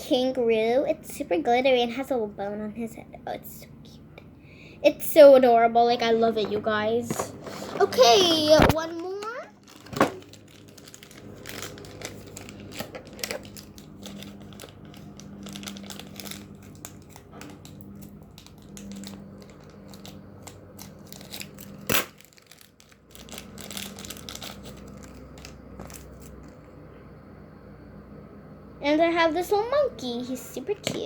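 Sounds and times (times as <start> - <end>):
packaging crinkling and tearing: 7.8 - 26.8.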